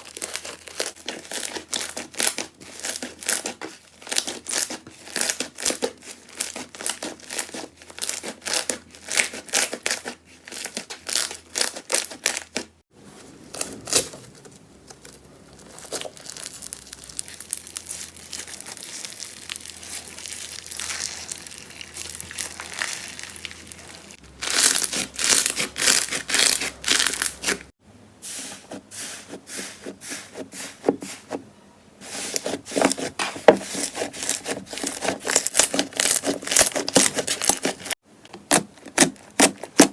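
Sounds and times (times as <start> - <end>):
slime crackling and popping: 0.0 - 12.6, 14.9 - 27.7, 33.8 - 37.9
slime squishing: 0.0 - 27.7, 32.1 - 39.9.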